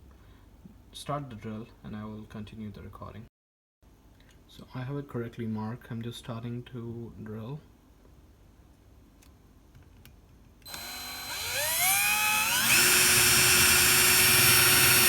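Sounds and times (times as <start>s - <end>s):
electric drill whining: 10.7s - 15.0s.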